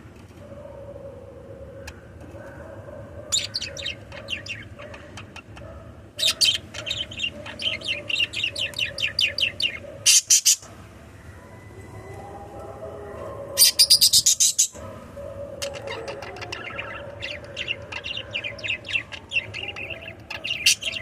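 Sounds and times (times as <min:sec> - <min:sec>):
budgerigars chirping: 0:03.3 - 0:05.6, 0:06.2 - 0:10.7, 0:13.6 - 0:14.8, 0:15.6 - 0:21.0.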